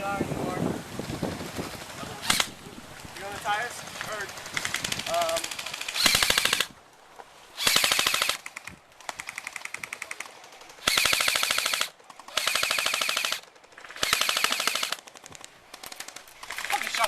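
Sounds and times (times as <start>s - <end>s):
airsoft guns firing bursts: 2.2s - 2.6s, 4.0s - 6.7s, 7.6s - 17.0s
distant gunfire: 4.2s - 6.7s, 7.6s - 17.0s.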